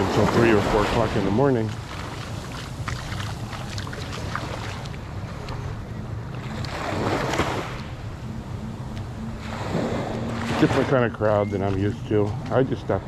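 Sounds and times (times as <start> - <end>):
surf washing on beach: 0.0 - 5.0.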